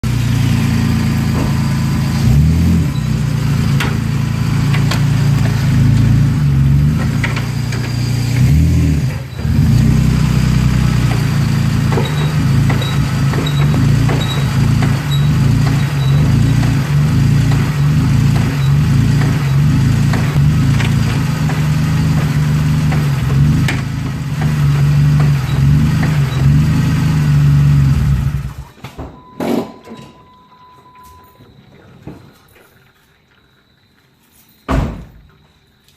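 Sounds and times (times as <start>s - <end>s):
car engine idling and revving: 0.0s - 29.4s
faint high chirp: 29.2s - 31.8s.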